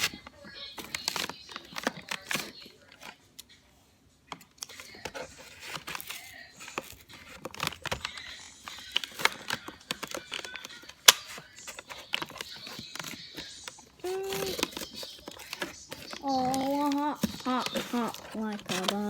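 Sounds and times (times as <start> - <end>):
cardboard and tape crinkling: 0.0 - 3.2, 4.6 - 19.0
person humming: 14.0 - 14.7, 16.2 - 19.0.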